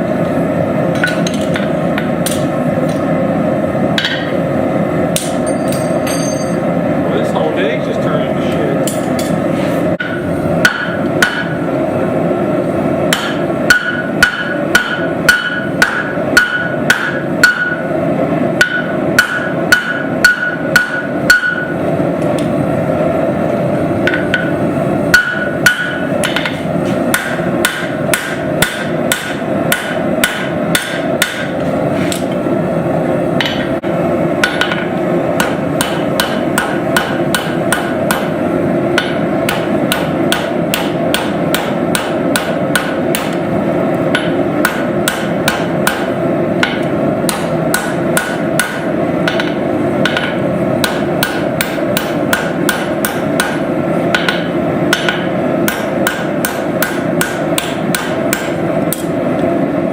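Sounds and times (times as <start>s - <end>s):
hammer striking steel on anvil: 0.9s - 3.1s, 3.9s - 4.4s, 5.1s - 6.7s, 8.8s - 9.4s, 10.0s - 11.7s, 13.1s - 17.9s, 18.6s - 22.5s, 24.0s - 32.4s, 33.4s - 38.4s, 39.0s - 43.5s, 44.1s - 59.2s.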